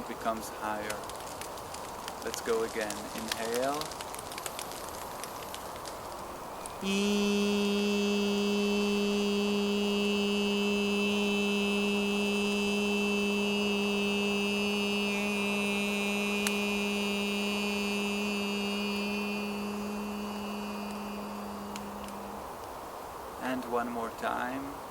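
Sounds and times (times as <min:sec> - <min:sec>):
man holding long vowel: 0:06.8 - 0:22.6.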